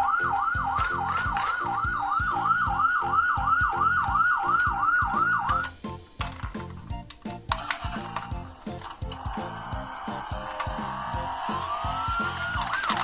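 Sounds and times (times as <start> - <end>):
police siren yelping: 0.0 - 5.7
background music with steady beat: 0.0 - 13.0.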